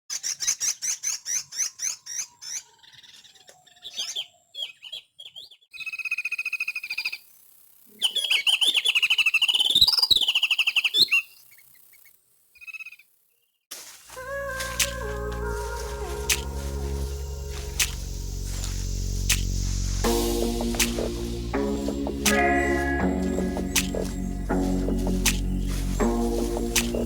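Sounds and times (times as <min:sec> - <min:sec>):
songbirds chirping and warbling: 0:00.1 - 0:27.0
music: 0:14.2 - 0:27.0.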